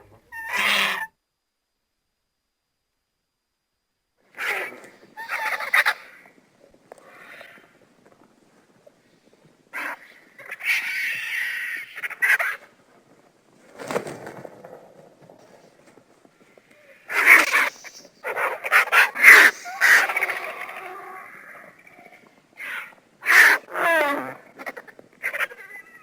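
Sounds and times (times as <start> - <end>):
vulture calling harshly: 0.3 - 1.1, 4.4 - 6.3, 9.7 - 12.7, 16.8 - 26.0.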